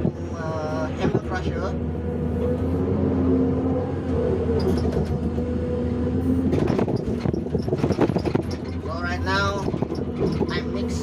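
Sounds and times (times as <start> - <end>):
excavator diesel drone: 0.0 - 11.0
clatter of knocks: 6.5 - 8.9, 9.5 - 10.7.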